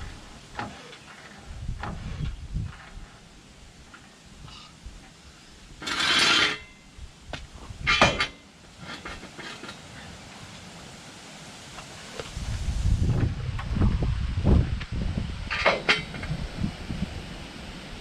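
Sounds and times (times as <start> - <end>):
metallic clank with ringing: 5.8 - 6.9, 7.9 - 8.4.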